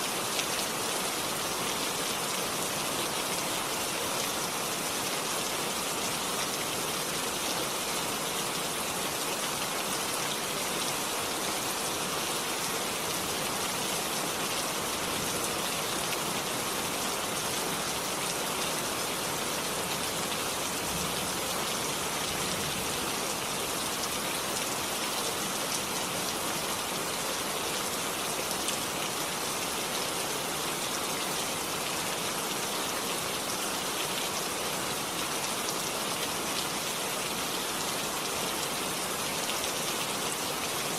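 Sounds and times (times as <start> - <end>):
steady rainfall: 0.0 - 40.9.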